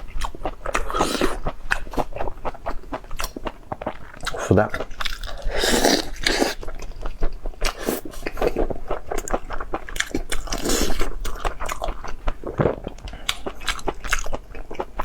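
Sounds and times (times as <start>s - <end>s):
chewing and crunching food: 0.0s - 15.0s.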